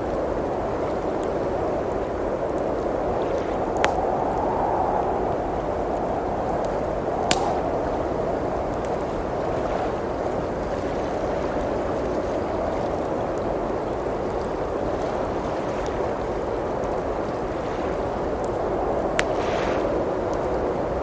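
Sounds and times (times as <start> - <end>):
howling blizzard wind: 0.0 - 21.0
wood fire crackling and popping: 0.7 - 10.2, 15.8 - 20.8.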